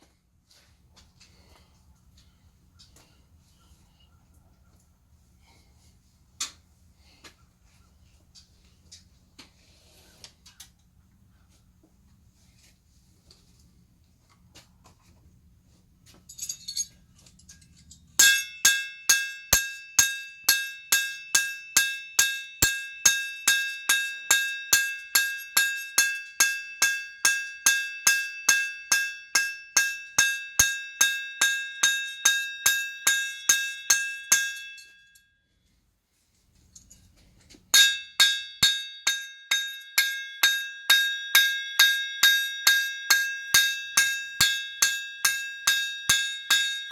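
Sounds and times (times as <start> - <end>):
hammer striking steel on anvil: 18.2 - 35.2, 37.7 - 46.9.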